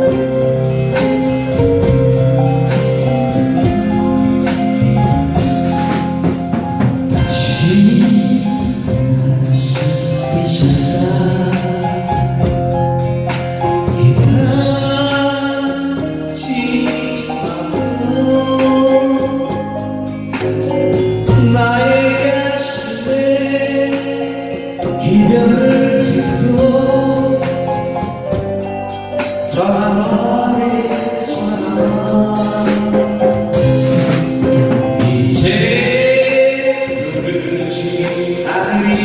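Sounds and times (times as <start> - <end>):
live band music: 0.0 - 39.0.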